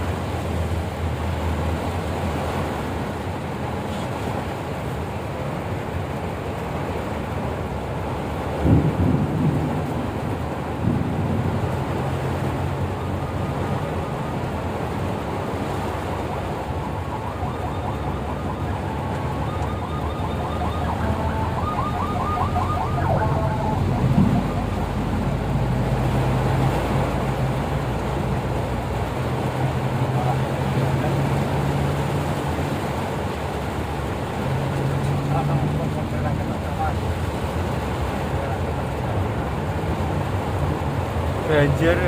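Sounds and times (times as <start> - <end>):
heavy rain: 0.0 - 42.0
road noise: 0.0 - 42.0
vehicle engine hum: 0.0 - 42.0
faint warbling tone: 16.9 - 25.5.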